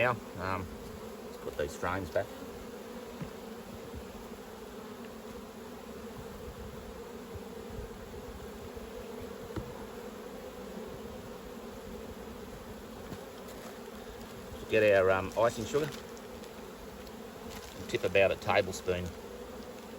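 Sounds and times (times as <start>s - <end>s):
honey bees buzzing: 0.0s - 19.9s.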